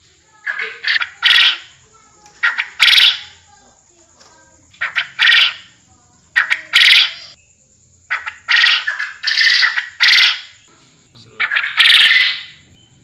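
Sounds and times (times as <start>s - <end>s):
quail rattling calls: 0.4s - 3.4s, 4.7s - 5.7s, 6.4s - 7.4s, 8.1s - 10.6s, 11.3s - 12.6s.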